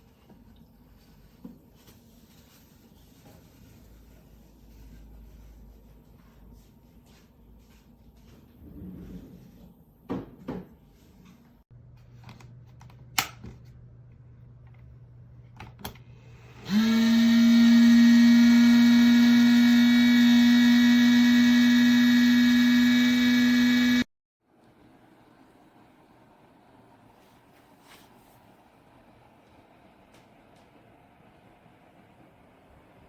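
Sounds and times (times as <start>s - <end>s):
electric fan motor humming: 15.8s - 27.0s.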